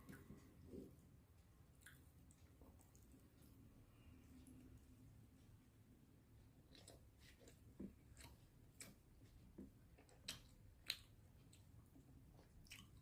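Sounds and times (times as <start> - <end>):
person chewing: 6.6 - 13.0.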